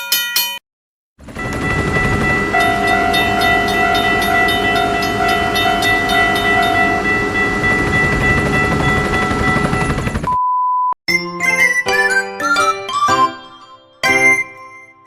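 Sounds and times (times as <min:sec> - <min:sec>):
train wheels rumbling and clattering: 0:01.2 - 0:10.3
train horn: 0:02.4 - 0:07.8.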